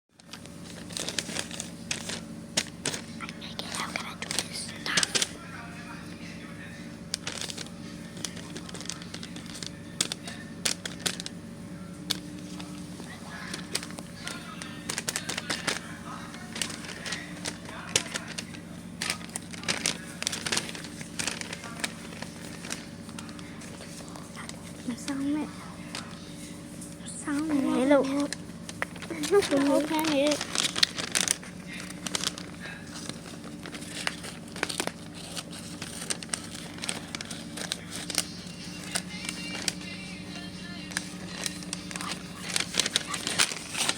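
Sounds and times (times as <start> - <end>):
paper crinkling and rustling: 0.1 - 43.9
low steady hum: 0.2 - 43.9.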